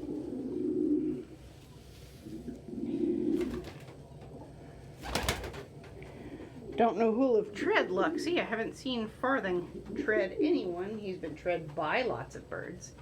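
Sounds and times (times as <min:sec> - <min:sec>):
pigeon cooing: 0:00.0 - 0:01.4, 0:02.2 - 0:03.8.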